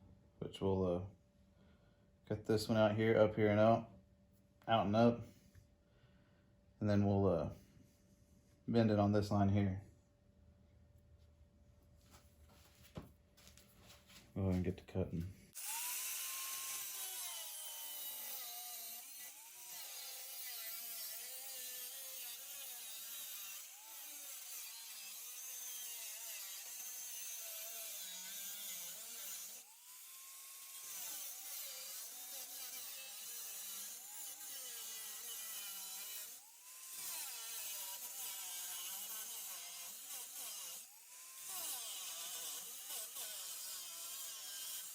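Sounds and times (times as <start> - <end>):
rotary tool cutting sheet metal: 15.6 - 44.9.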